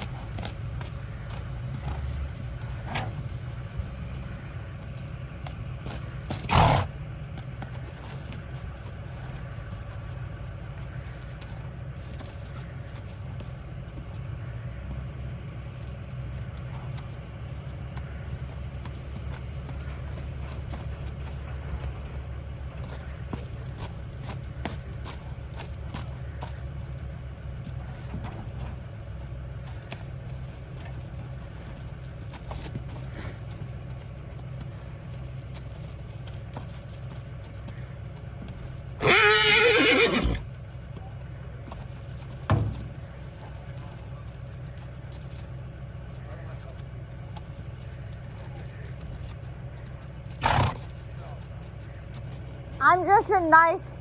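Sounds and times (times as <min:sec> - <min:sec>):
low vehicle rumble: 0:00.0 - 0:54.0
horse whinnying: 0:06.3 - 0:06.9, 0:39.0 - 0:40.4, 0:50.4 - 0:50.9.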